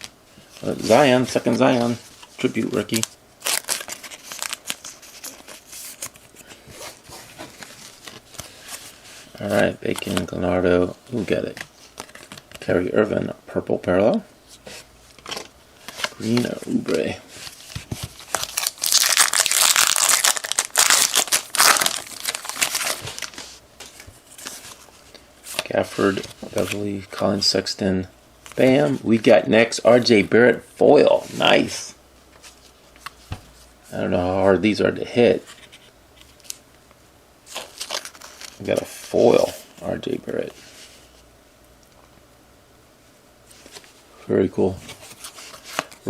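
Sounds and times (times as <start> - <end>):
cards rustling: 0.0 - 10.5, 11.1 - 12.8, 14.7 - 27.5, 37.5 - 41.0, 44.6 - 46.0
foil wrapper crinkling and tearing: 2.4 - 6.2, 18.2 - 23.4, 37.5 - 38.8.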